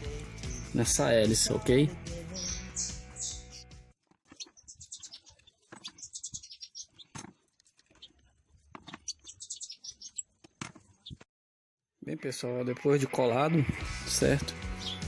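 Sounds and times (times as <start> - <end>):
small bird chirping: 0.4 - 0.8, 2.2 - 3.7, 4.3 - 11.2, 14.8 - 15.0.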